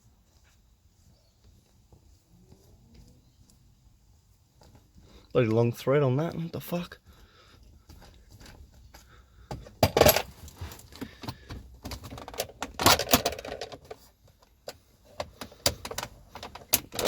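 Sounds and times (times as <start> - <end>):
parts and tools clicking and rattling: 7.6 - 17.0.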